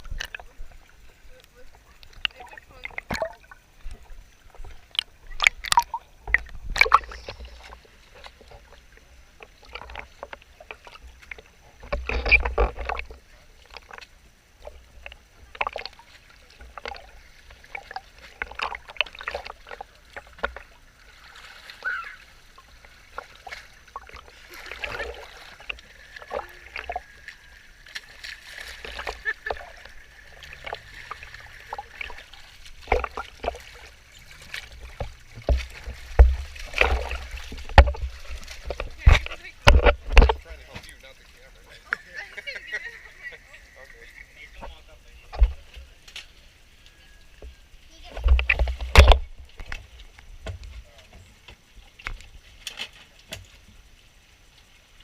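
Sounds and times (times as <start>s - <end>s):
water splashing around boat: 0.0s - 55.0s.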